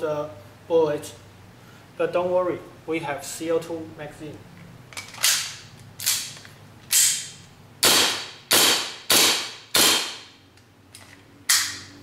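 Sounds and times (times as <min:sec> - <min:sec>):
airsoft pistol shots: 0:07.0 - 0:10.3.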